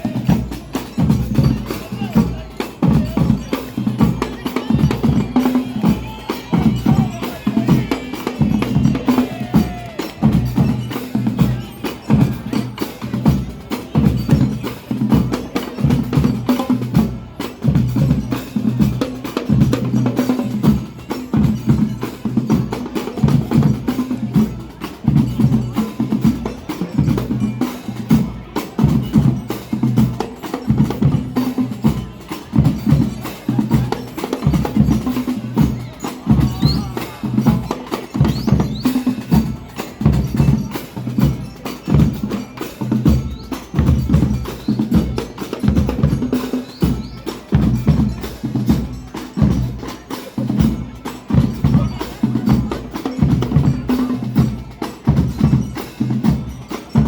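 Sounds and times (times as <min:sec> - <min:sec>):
fast dense drumming: 0:00.0 - 0:57.0.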